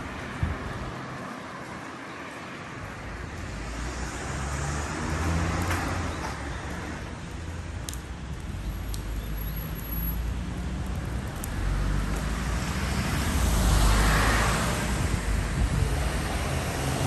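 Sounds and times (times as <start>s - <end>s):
motor vehicle passing: 3.4s - 7.1s.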